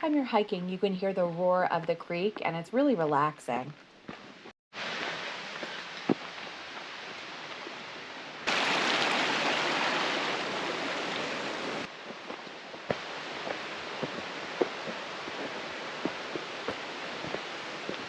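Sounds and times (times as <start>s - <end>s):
water rushing over rocks: 4.8s - 18.0s.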